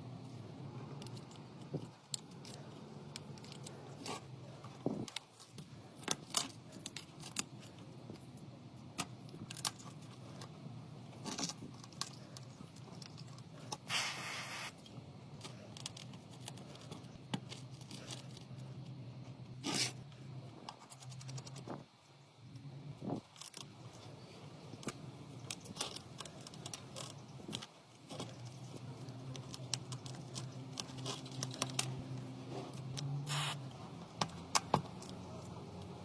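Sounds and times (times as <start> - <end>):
noisy scrape: 32.4 - 33.8.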